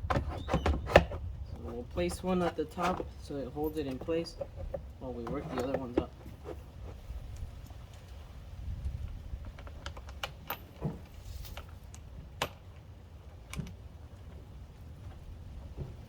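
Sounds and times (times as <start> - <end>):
plastic parts clicking and knocking: 3.8 - 6.6.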